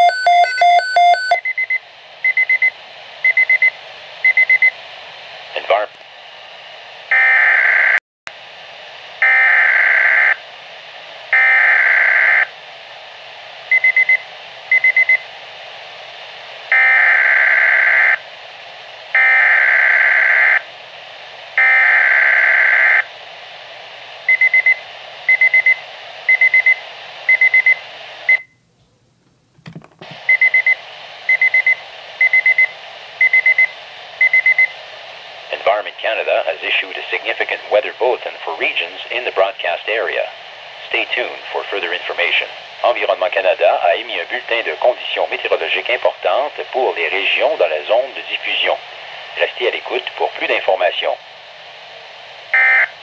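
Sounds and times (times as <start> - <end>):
electronic alert beeps: 0.0 - 2.6
rapid beep groups: 0.0 - 2.7
radio hiss: 2.1 - 7.1, 8.3 - 16.7, 20.2 - 21.6, 22.5 - 28.4, 30.0 - 53.0.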